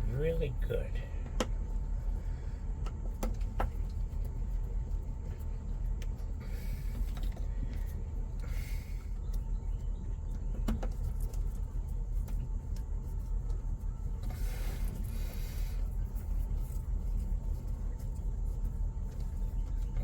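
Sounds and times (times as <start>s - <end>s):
steady low hum: 0.0s - 20.0s
rustles and clicks of wiring: 9.2s - 20.0s.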